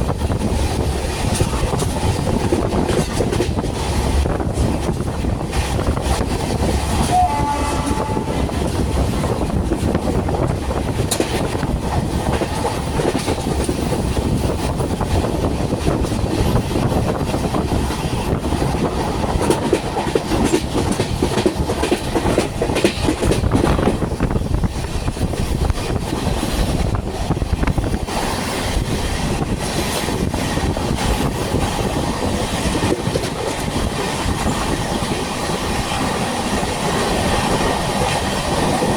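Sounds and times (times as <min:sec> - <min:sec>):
train wheels rumbling on rails: 0:00.0 - 0:38.9
short train horn note: 0:07.0 - 0:08.6.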